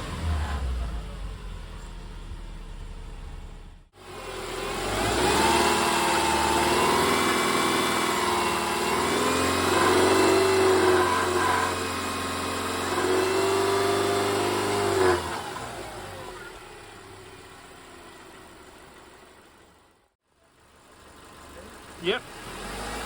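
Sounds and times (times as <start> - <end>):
car engine revving: 0.0 - 19.5, 21.0 - 23.0.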